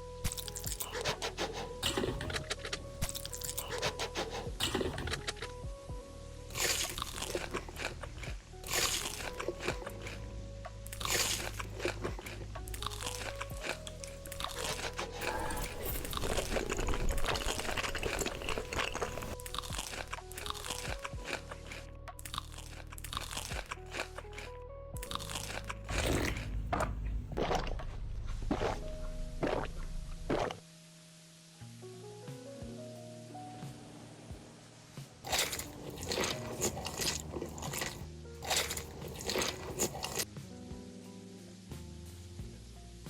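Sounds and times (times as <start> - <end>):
background music: 0.0 - 43.0
crunchy food being chewed: 0.3 - 5.6, 6.5 - 30.6, 35.2 - 40.3.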